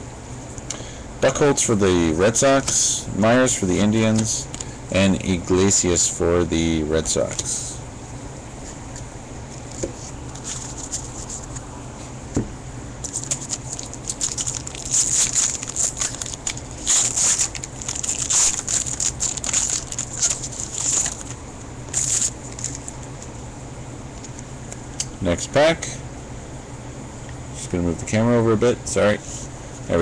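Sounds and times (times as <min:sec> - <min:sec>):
steady low hum: 0:00.0 - 0:30.0
foil wrapper crinkling and tearing: 0:13.0 - 0:23.1.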